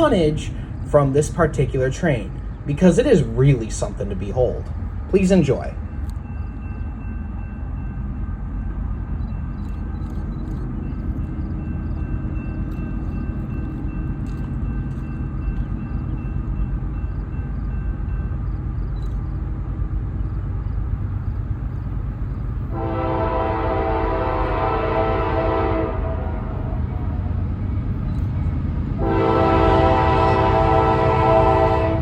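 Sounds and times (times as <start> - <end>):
diesel locomotive rumble: 0.0 - 32.0
locomotive horn: 22.7 - 27.2, 29.0 - 32.0.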